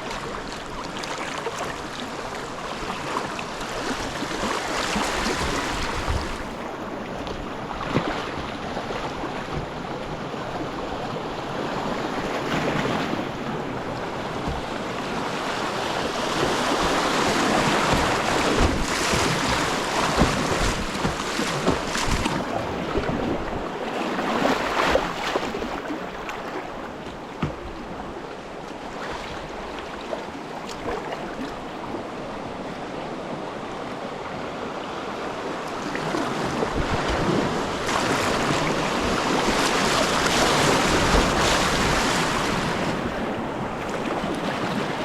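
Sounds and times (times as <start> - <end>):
short water splashes: 0.0 - 6.6, 12.5 - 23.6, 35.8 - 43.2
whitewater rushing: 12.7 - 23.4.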